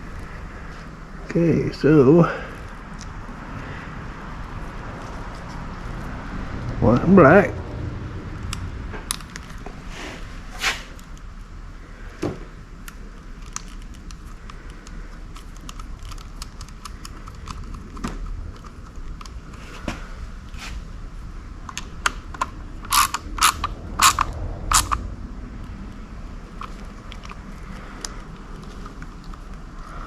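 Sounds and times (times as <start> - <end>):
wire connectors clicking: 12.8 - 19.8, 26.5 - 29.8.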